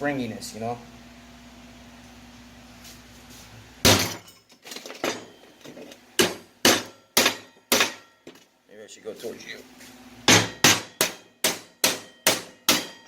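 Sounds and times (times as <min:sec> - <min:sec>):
hammer striking steel: 0:06.2 - 0:08.3, 0:10.3 - 0:13.0.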